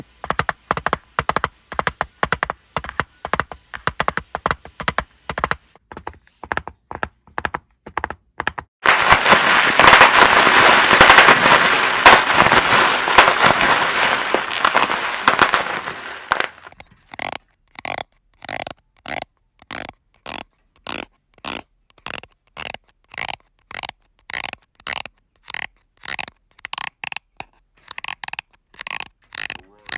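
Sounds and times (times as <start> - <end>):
quick taps: 0.0 - 8.7
dense crackling: 8.8 - 16.7.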